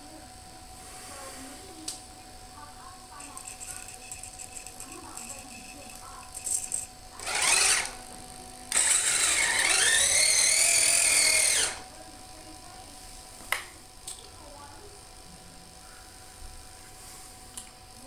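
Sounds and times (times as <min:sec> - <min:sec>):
electric motor whining: 0:06.7 - 0:11.9.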